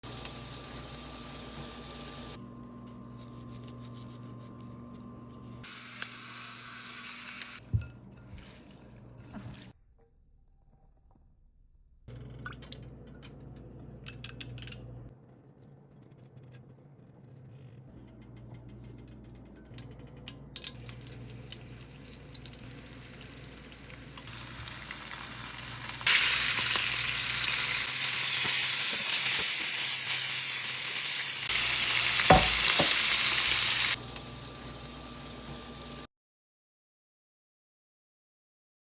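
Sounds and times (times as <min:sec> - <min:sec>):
fish frying in sizzling oil: 0:20.8 - 0:36.1.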